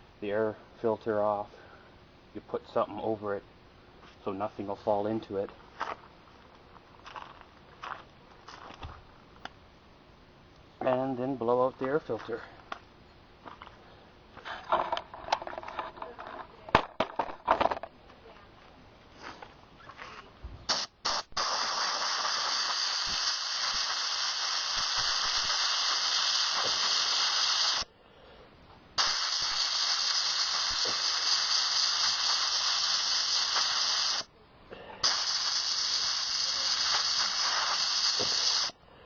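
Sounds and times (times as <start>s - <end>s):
compressed air blasts: 20.6s - 27.9s, 29.0s - 34.3s, 35.0s - 38.8s.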